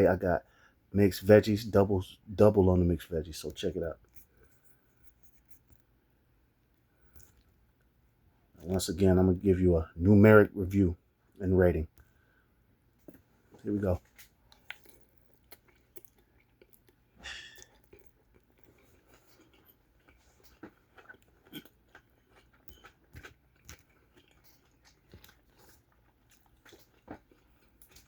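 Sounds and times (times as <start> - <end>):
person chewing food: 3.4 - 6.0, 6.6 - 8.0, 11.9 - 28.0
bite crunch: 13.0 - 28.0.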